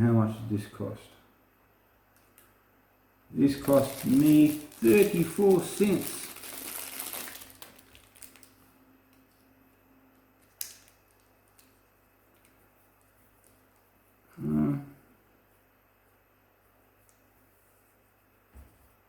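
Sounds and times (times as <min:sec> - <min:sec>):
person speaking: 0:03.3 - 0:06.8, 0:14.3 - 0:15.0
packaging crinkling: 0:03.4 - 0:08.7, 0:10.4 - 0:12.5.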